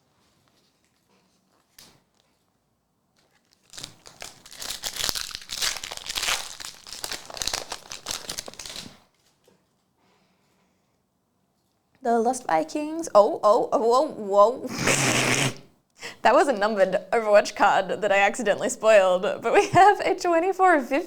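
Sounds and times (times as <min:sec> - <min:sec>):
wrapper crinkling and tearing: 0:03.2 - 0:09.4.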